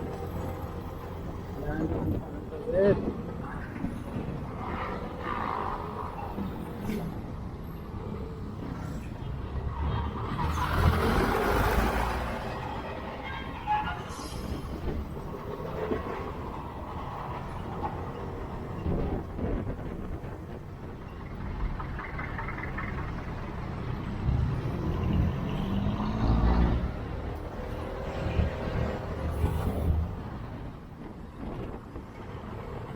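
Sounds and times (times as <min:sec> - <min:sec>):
road traffic rumble: 0:00.0 - 0:32.9
engine revving up: 0:24.2 - 0:27.0.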